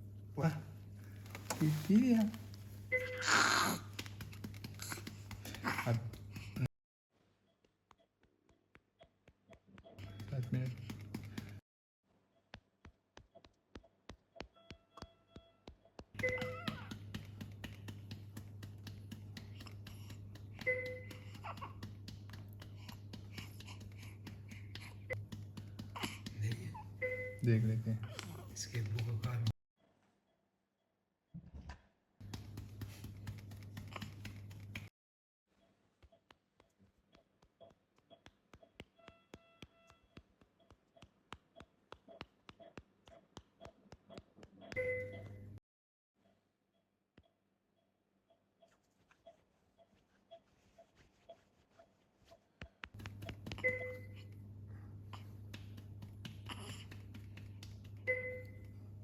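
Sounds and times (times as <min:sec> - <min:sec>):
light pats on baby's back: 0:01.1 - 0:06.7, 0:08.2 - 0:11.6, 0:12.8 - 0:26.9, 0:28.1 - 0:29.5, 0:32.2 - 0:34.9, 0:48.8 - 0:59.0
rapid light tapping: 0:03.9 - 0:06.7, 0:07.9 - 0:11.6, 0:12.5 - 0:26.9, 0:52.6 - 0:54.3, 0:55.1 - 0:58.8
soft repeating beeps: 0:53.6 - 0:54.2, 0:58.1 - 0:58.7.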